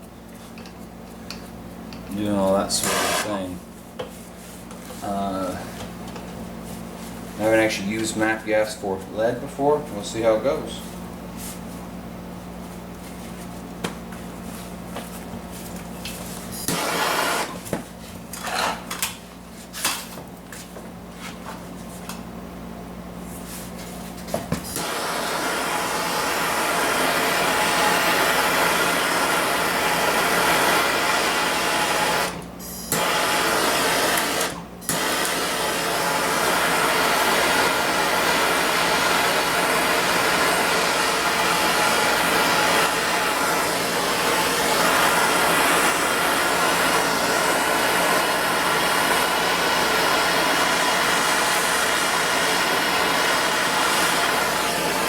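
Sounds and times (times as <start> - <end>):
gas torch burning hiss: 16.6 - 17.6, 24.6 - 55.0.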